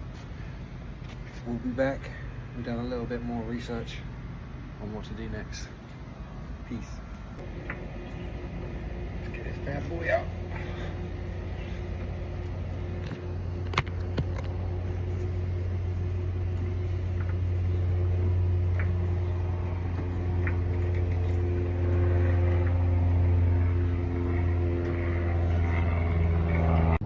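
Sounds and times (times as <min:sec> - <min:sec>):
low mechanical hum: 0:00.0 - 0:27.0.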